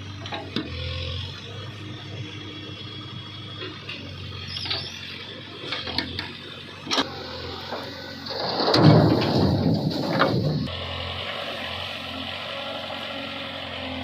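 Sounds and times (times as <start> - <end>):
diesel engine running: 0.0 - 14.0.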